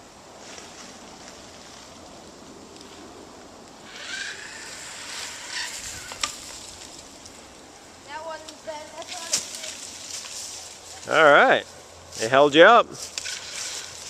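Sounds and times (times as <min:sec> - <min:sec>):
zip line trolley hissing: 0:03.8 - 0:06.8.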